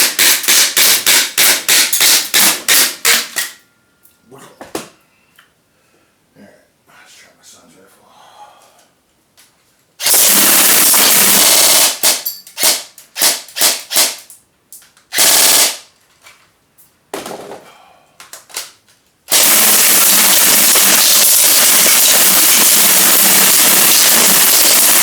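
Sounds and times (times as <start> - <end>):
airsoft gun firing bursts: 10.0 - 14.2, 15.1 - 15.8, 19.3 - 25.0.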